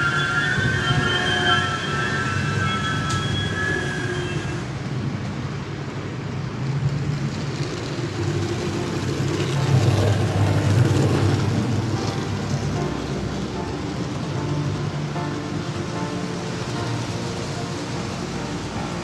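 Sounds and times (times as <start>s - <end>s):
high wheel squeal: 0.0s - 5.1s, 6.8s - 19.0s
model train wheels rumbling on rails: 0.0s - 19.0s.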